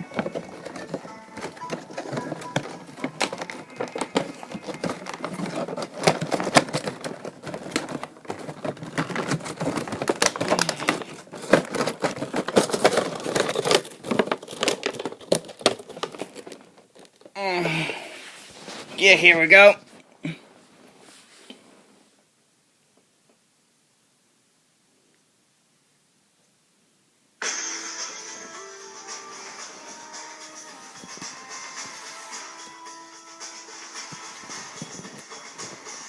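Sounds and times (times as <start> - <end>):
packaging crinkling and rustling: 0.0 - 17.4.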